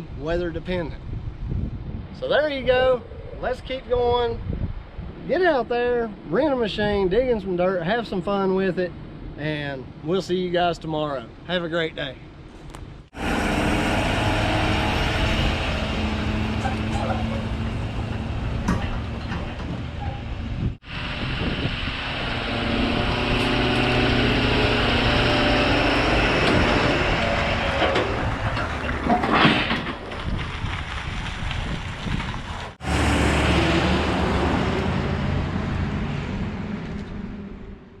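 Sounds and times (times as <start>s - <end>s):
heavy machinery running: 13.2s - 29.2s, 32.8s - 36.6s.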